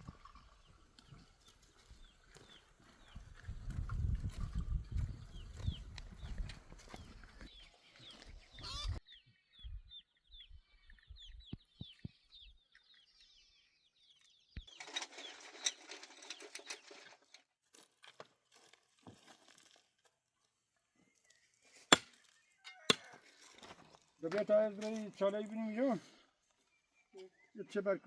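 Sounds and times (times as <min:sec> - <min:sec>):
small bird chirping: 0:00.0 - 0:17.3.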